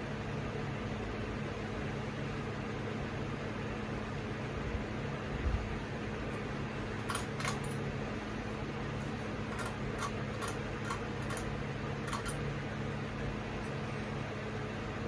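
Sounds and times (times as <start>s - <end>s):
ceiling fan motor humming: 0.0s - 15.0s.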